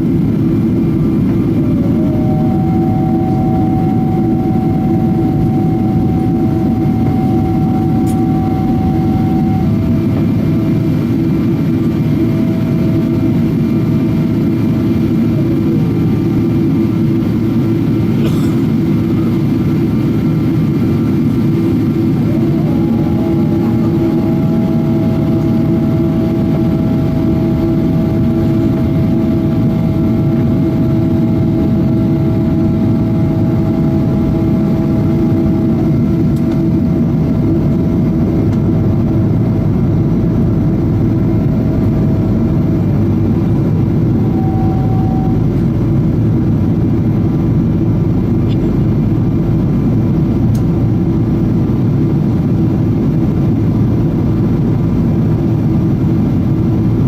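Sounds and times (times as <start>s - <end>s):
steady whining tones: 0.0s - 51.7s
aircraft cabin engine roar: 0.0s - 57.0s
short tone: 1.6s - 10.7s, 22.2s - 35.6s, 44.1s - 45.6s.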